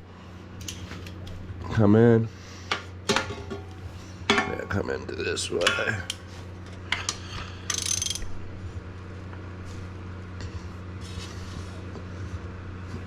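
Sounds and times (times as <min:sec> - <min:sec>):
steady low hum: 0:00.0 - 0:13.0
clicks and knocks of metal parts: 0:05.6 - 0:08.3
metallic rattle: 0:07.7 - 0:08.4.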